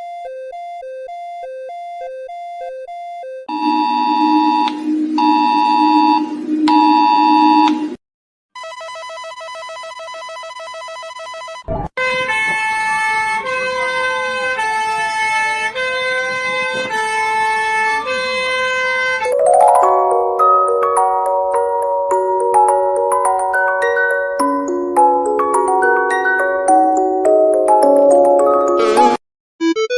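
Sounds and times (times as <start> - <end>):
two-tone electronic beeps: 0.0 - 8.0
low electronic drone: 3.5 - 8.0
siren tone sweeping: 3.5 - 8.0.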